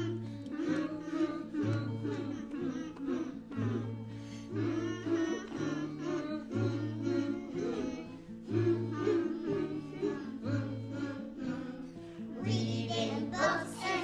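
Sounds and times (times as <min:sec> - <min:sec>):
person singing: 0:00.0 - 0:14.0
plucked string accompaniment: 0:00.0 - 0:14.0.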